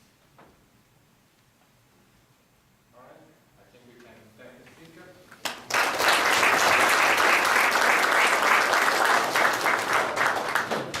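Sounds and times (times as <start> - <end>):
audience applauding: 5.4 - 11.0.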